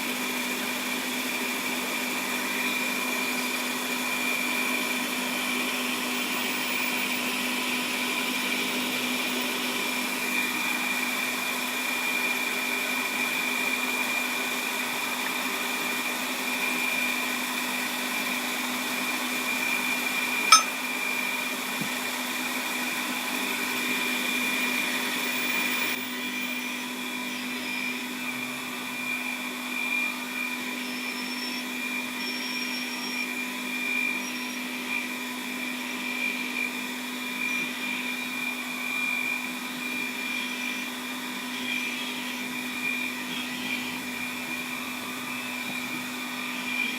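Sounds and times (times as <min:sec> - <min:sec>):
lathe motor whining: 0:37.8 - 0:46.9.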